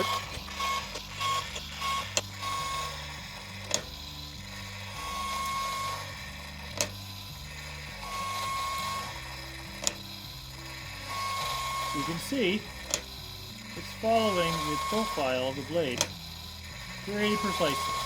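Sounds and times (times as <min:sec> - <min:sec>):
low motor hum: 0:00.0 - 0:18.0
machine whine: 0:00.0 - 0:18.0
mechanism sharp click: 0:03.6 - 0:03.9.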